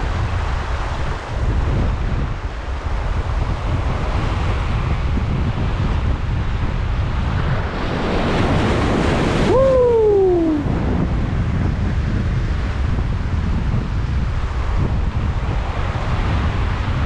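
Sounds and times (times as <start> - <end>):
wind buffeting microphone: 0.0 - 17.0
surf washing against rocks: 7.0 - 11.0.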